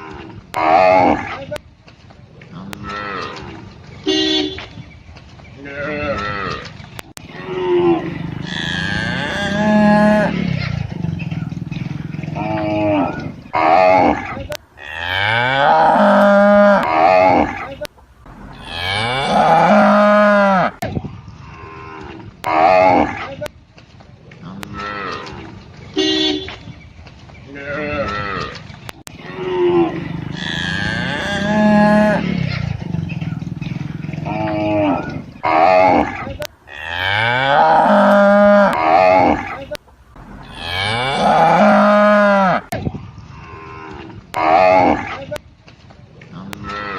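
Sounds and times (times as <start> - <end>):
cattle mooing: 5.6 - 20.8, 27.5 - 42.8.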